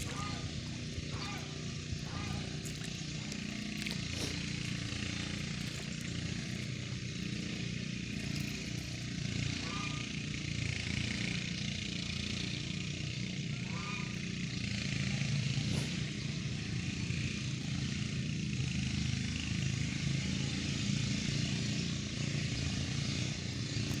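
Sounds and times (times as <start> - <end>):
faint voices: 0.0 - 10.2
small motor running: 0.0 - 24.0.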